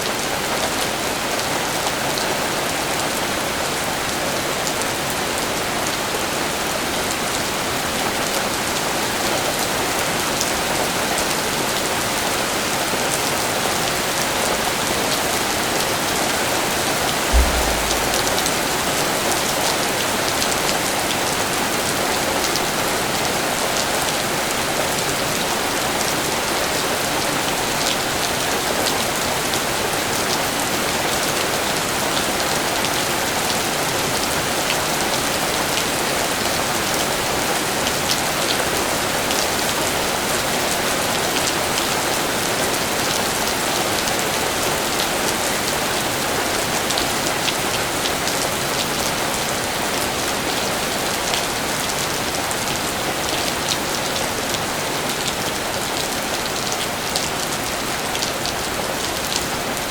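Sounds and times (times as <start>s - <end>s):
steady rain: 17.3s - 19.8s, 20.7s - 59.9s.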